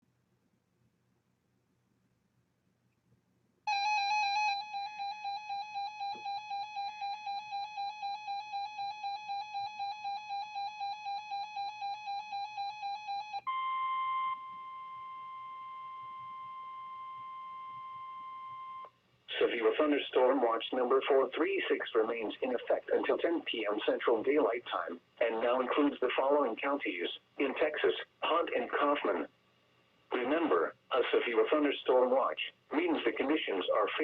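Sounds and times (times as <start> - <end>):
pulsing electronic alarm beeps: 3.7 - 18.9
steady warning tone: 3.7 - 26.8.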